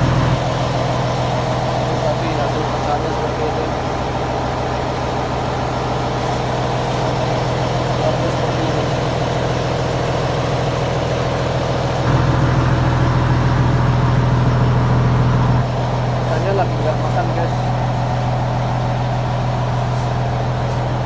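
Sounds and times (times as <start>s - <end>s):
machine engine humming: 0.0s - 21.0s.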